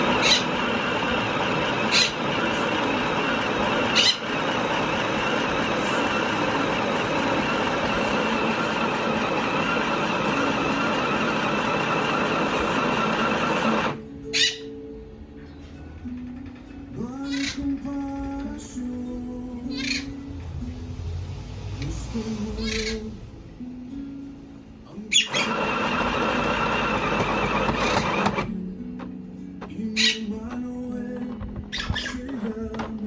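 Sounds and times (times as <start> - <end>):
sewing machine motor running: 0.0 - 14.0, 25.2 - 33.0.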